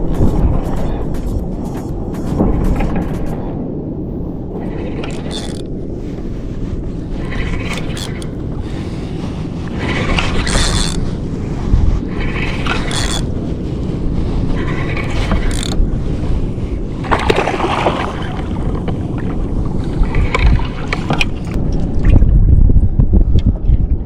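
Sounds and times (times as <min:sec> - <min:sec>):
wind buffeting microphone: 0:00.0 - 0:24.0
water splashing against kayak hull: 0:07.1 - 0:22.4.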